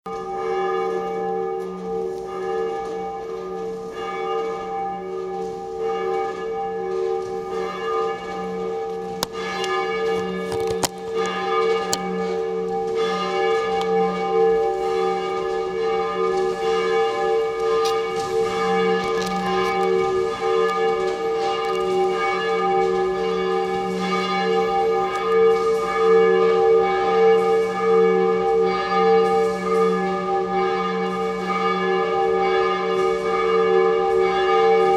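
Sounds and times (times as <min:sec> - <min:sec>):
church bells ringing: 0:00.1 - 0:34.9.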